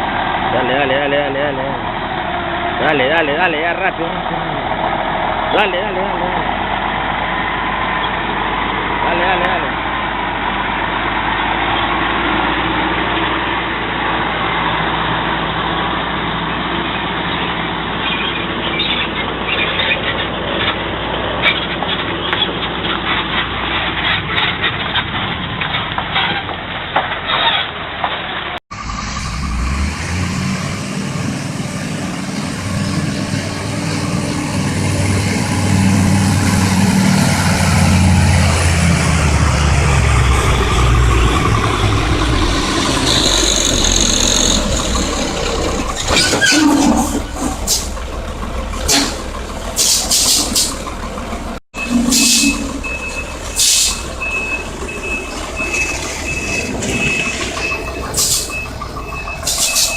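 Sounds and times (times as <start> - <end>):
heavy vehicle engine revving: 0.0 - 59.9
air brakes hissing: 42.8 - 48.0, 48.8 - 50.8, 51.9 - 54.2, 55.6 - 59.9
reversing beeper: 51.8 - 59.9.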